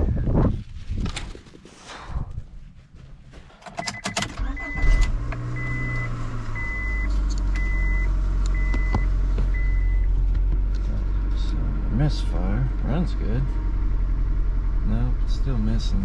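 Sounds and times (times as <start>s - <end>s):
car engine cranking and idling: 3.3s - 16.0s
dashboard chime beeping: 8.6s - 10.0s.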